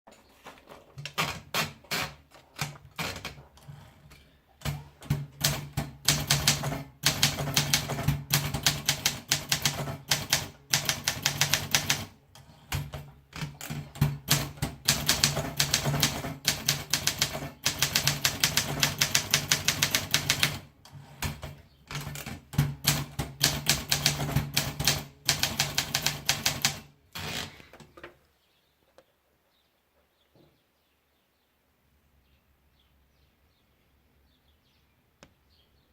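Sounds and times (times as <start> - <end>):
typewriter key strikes: 13.7 - 20.6.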